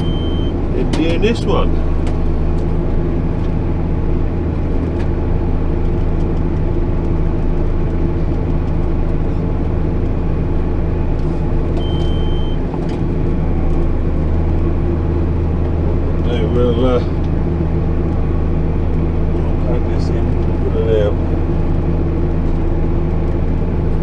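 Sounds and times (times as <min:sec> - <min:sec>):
short high beep: 0:00.0 - 0:00.6, 0:11.8 - 0:12.6
tractor diesel engine drone: 0:00.0 - 0:24.0.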